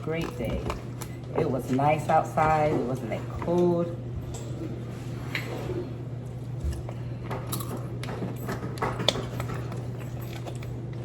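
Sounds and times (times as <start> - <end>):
crunching and chewing chips: 6.3 - 11.0.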